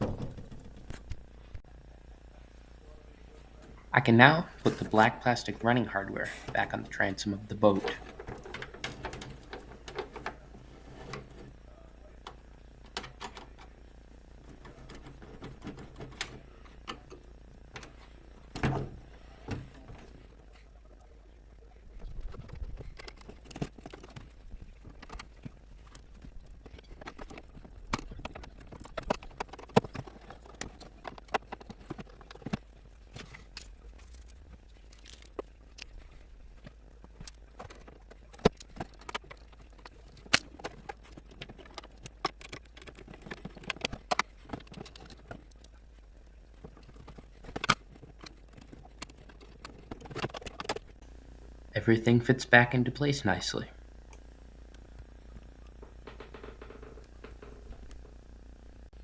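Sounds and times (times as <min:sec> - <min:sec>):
small plastic parts clicking: 0:22.0 - 0:51.0.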